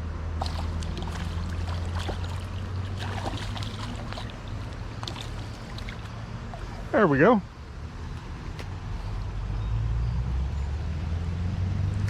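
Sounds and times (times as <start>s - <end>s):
low hum: 0.0s - 9.6s
small splashes: 0.4s - 7.3s
creek water running: 0.4s - 9.0s.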